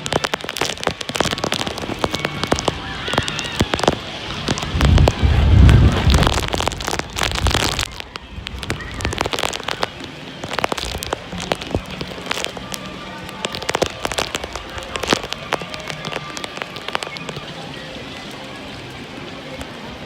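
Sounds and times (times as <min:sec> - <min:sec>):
wind buffeting microphone: 0:00.0 - 0:15.8
heavy rain drops tapping: 0:00.0 - 0:20.0.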